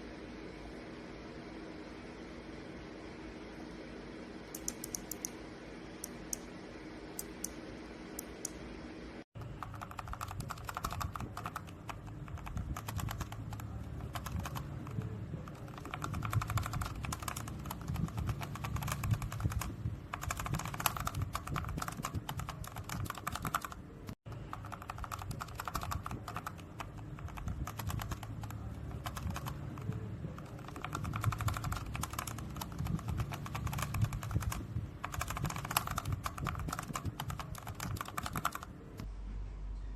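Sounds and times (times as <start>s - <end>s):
mechanical keyboard typing: 4.6s - 5.3s, 9.4s - 38.7s.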